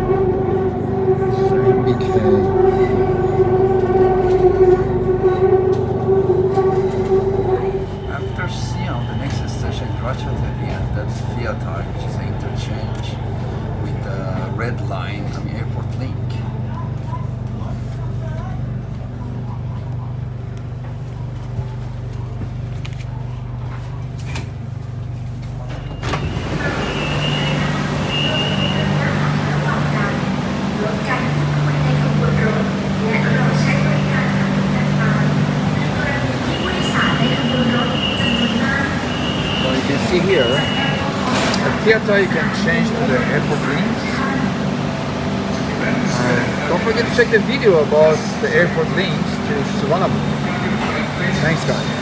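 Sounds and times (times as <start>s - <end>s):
train wheels rumbling: 20.2s - 52.0s
electric train motor hum: 24.2s - 52.0s.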